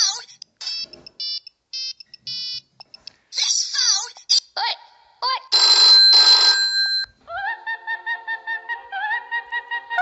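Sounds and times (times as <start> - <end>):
telephone bell ringing: 5.5 - 7.2.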